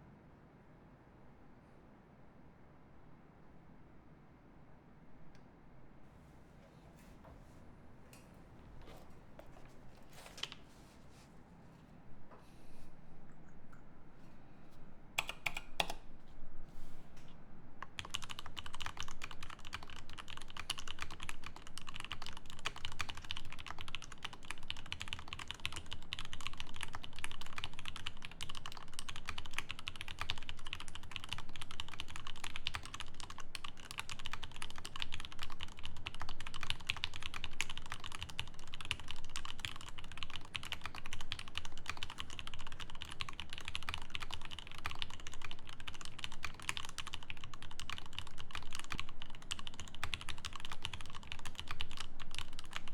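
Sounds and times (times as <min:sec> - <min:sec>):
mechanical keyboard typing: 0:15.2 - 0:16.0, 0:17.8 - 0:52.9.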